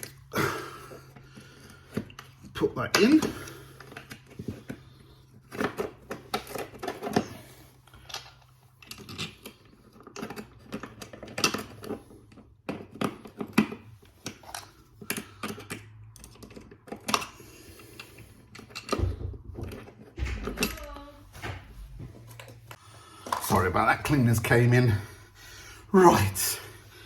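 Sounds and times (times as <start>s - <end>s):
plastic parts clicking: 1.1s - 21.0s.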